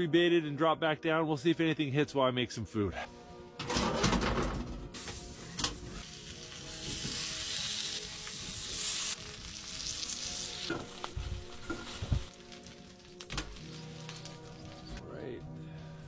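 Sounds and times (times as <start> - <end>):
food sizzling in a skillet: 5.0 - 14.8.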